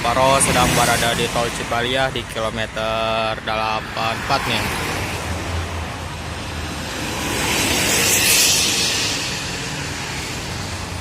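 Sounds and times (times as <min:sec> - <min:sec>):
vehicle passing by: 0:03.7 - 0:11.0.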